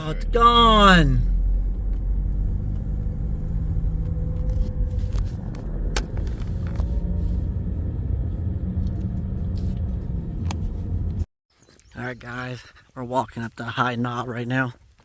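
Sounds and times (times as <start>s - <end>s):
car engine and tyres rumbling: 0.0s - 11.3s.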